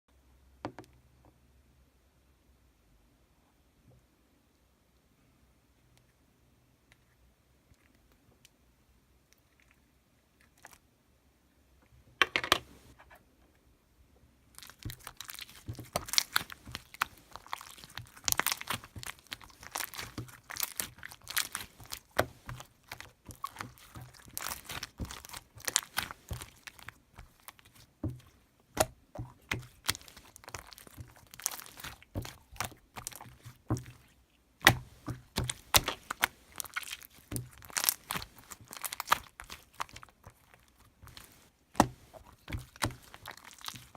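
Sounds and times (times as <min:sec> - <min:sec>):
crinkling and crackling handling noise: 0:14.5 - 0:43.9.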